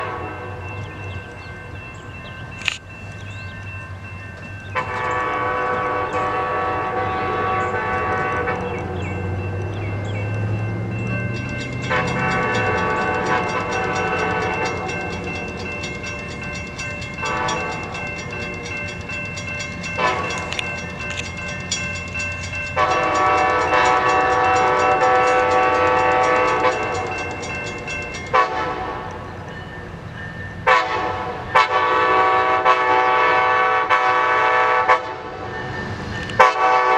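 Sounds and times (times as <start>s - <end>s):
locomotive air horn blasts: 0.0s - 0.5s, 4.8s - 9.0s, 11.6s - 15.4s, 20.0s - 20.6s, 22.7s - 27.0s, 28.3s - 29.2s, 30.6s - 35.3s, 36.4s - 36.9s
locomotive engines droning: 0.0s - 36.9s.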